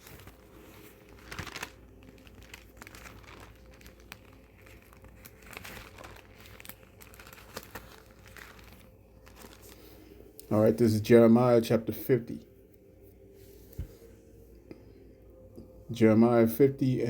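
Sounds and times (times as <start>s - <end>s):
paper pages turning: 0.0s - 10.6s.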